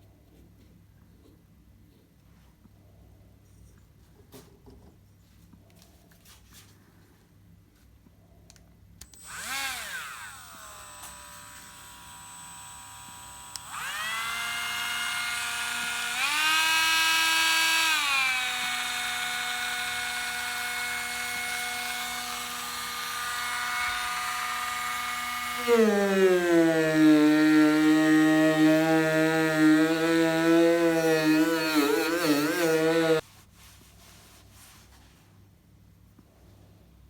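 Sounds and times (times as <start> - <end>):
electric power tool motor whining: 9.0 - 33.2.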